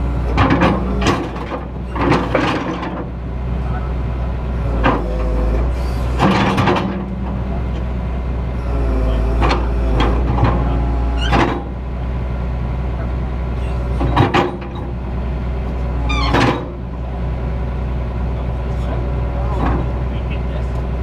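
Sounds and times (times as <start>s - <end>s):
diesel engine running: 0.0s - 21.0s
hydraulic squeals and knocks: 0.3s - 3.0s, 4.7s - 7.4s, 8.8s - 11.8s, 13.6s - 14.9s, 16.0s - 16.8s.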